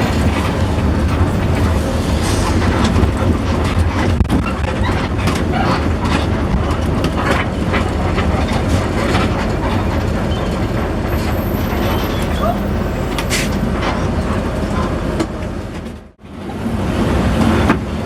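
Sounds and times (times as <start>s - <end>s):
bus body rattling: 0.0s - 18.0s
bus engine and road rumble: 0.0s - 18.0s.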